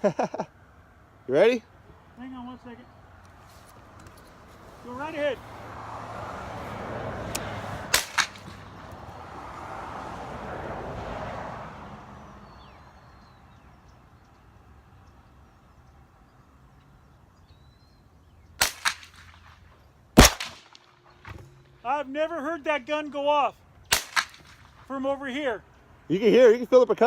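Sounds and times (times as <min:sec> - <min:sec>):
gunshots: 0:07.9 - 0:08.7, 0:18.6 - 0:19.6, 0:20.2 - 0:21.0, 0:23.9 - 0:24.8.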